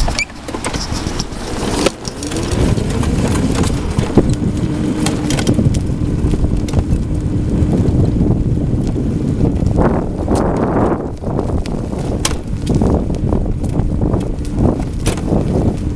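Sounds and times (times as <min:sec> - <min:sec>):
sharp clicks and knocks: 0:00.0 - 0:04.4
wind noise on microphone: 0:00.0 - 0:15.9.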